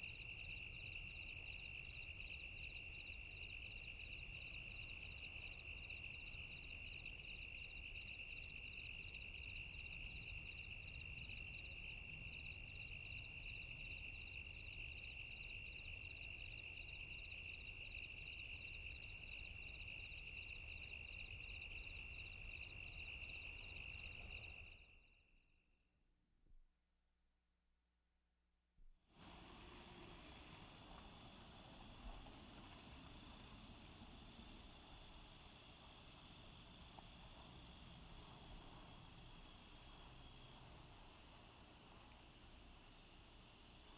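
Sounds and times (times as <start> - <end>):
crickets chirping: 0.0 - 25.5, 29.2 - 43.9.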